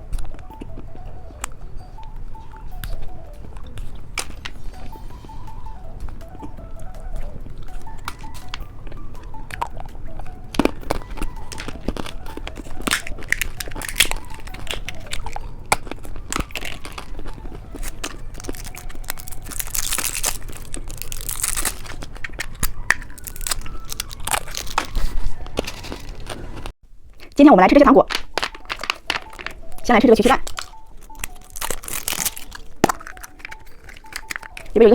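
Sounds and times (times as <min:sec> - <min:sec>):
plastic packaging crinkling and tearing: 0:10.5 - 0:27.4, 0:28.1 - 0:34.9.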